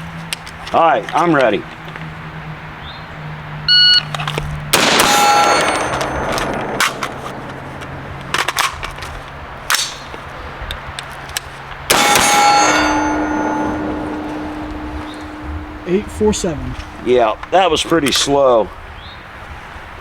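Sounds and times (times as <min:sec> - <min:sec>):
shot timer beeps: 0:03.7 - 0:04.1
rifle shot: 0:04.7 - 0:08.8, 0:11.9 - 0:15.8
steel target ringing: 0:04.8 - 0:10.2, 0:11.9 - 0:18.8.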